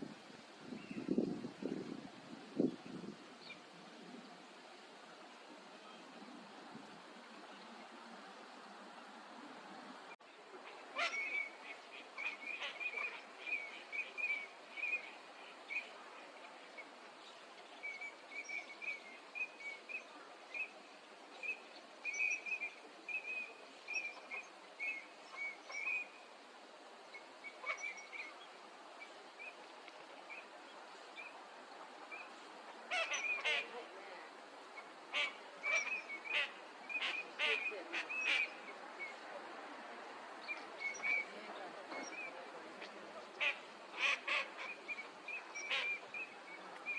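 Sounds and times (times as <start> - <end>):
ducks whistling calls: 35.1 - 38.8, 43.4 - 46.9.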